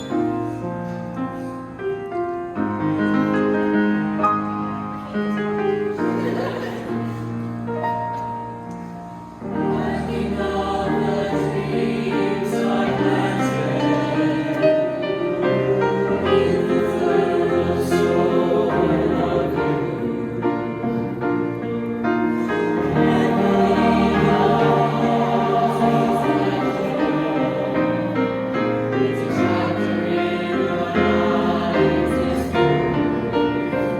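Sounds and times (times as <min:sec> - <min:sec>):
piano accompaniment: 0:00.0 - 0:33.9
choir singing: 0:05.9 - 0:07.5, 0:09.4 - 0:33.9.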